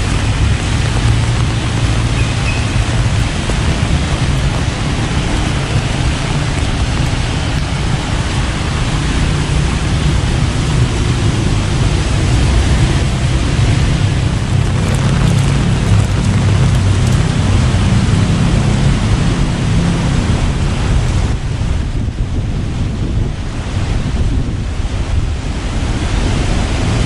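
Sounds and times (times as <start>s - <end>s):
rain downpour: 0.0s - 27.0s
low rumble: 10.5s - 20.4s.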